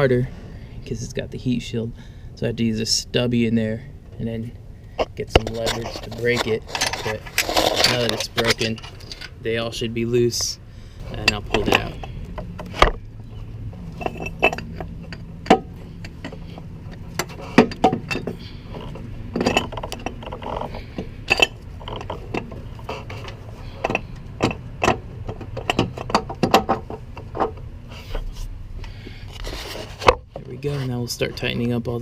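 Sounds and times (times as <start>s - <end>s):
metallic clicks of tools and bolts: 5.0s - 9.4s, 11.1s - 13.1s, 13.8s - 27.7s.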